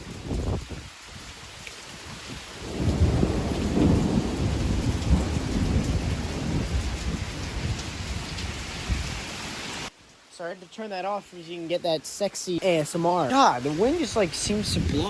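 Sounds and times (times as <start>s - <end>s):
steady rain: 0.0s - 15.0s
thunder rumbling: 2.2s - 9.4s, 13.7s - 15.0s.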